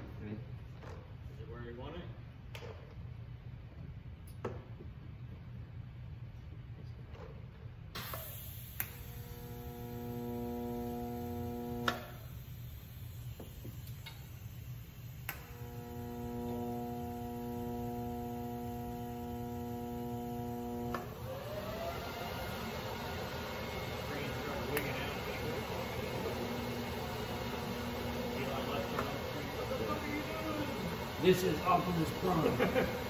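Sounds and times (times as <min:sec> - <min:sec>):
low electrical hum: 0:00.0 - 0:33.0
welder click: 0:08.0 - 0:12.3, 0:15.2 - 0:21.2, 0:24.7 - 0:25.0
welder arc buzzing: 0:08.0 - 0:33.0.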